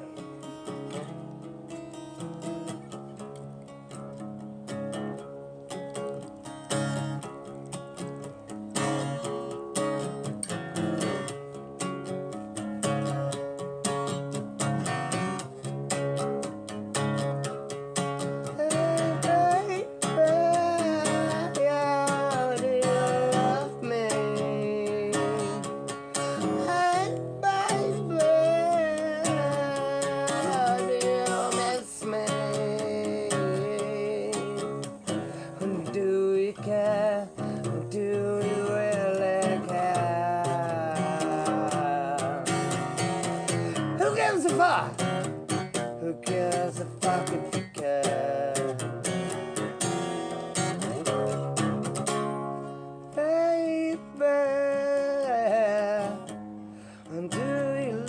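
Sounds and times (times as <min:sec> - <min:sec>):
acoustic guitar strumming: 0:00.0 - 0:58.0
person singing wordless melody: 0:18.3 - 0:51.5, 0:52.6 - 0:58.0.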